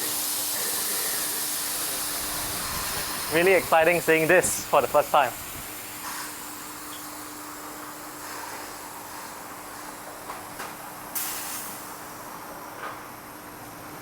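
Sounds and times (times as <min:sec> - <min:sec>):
compressed air hiss: 0:00.0 - 0:07.3, 0:11.2 - 0:11.9.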